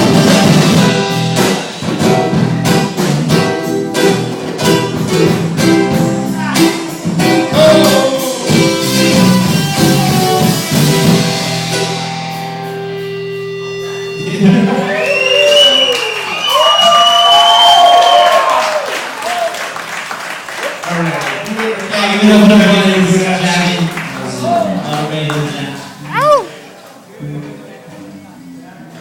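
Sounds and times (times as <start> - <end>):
band playing guitar and drums: 0.0 - 16.6, 22.3 - 26.6
crowd whooping and cheering: 14.5 - 19.9, 26.1 - 26.6.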